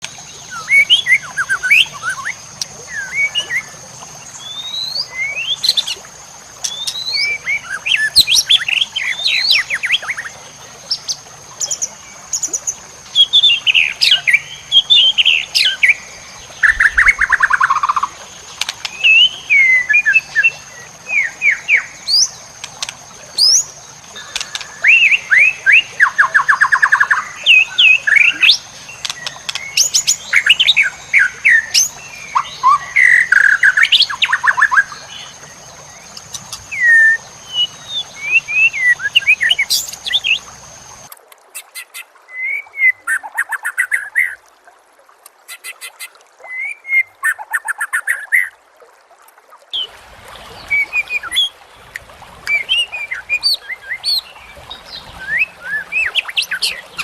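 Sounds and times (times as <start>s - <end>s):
songbird whistles and chirps: 0.4s - 3.7s, 36.1s - 40.5s, 46.4s - 48.5s, 50.6s - 51.5s, 52.4s - 54.3s, 54.9s - 57.0s.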